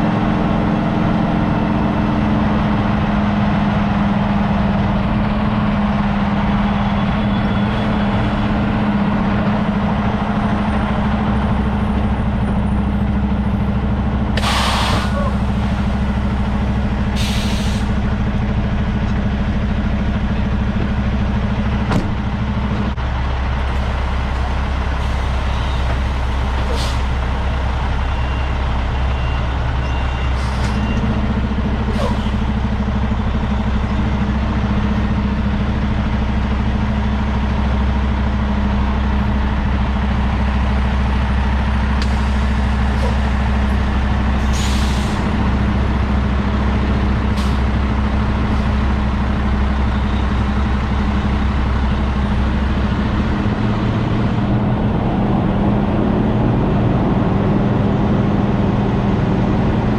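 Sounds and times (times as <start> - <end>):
diesel truck engine droning: 0.0 - 59.9
short hisses: 14.4 - 18.0, 23.9 - 27.8, 44.5 - 45.2.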